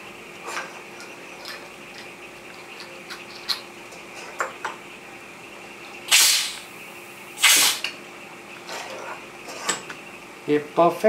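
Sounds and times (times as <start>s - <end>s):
compressed air hissing: 6.1s - 7.9s.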